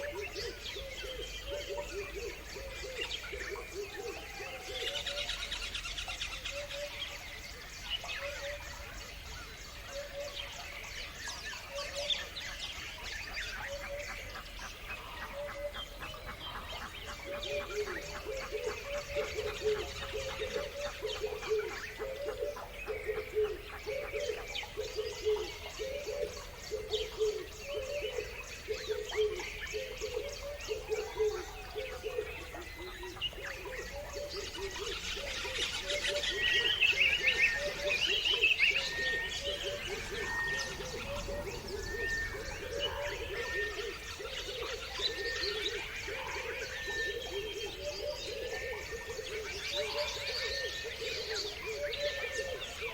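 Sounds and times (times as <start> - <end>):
birds chirping and calling: 0.0 - 52.9
low bird call: 33.8 - 52.9.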